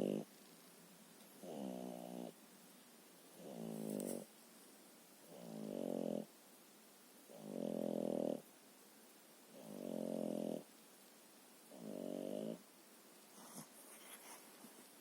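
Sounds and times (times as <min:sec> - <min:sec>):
dog snoring: 0:00.0 - 0:00.3, 0:01.4 - 0:02.4, 0:03.4 - 0:04.3, 0:05.3 - 0:06.3, 0:07.3 - 0:08.5, 0:09.5 - 0:10.7, 0:11.7 - 0:12.6.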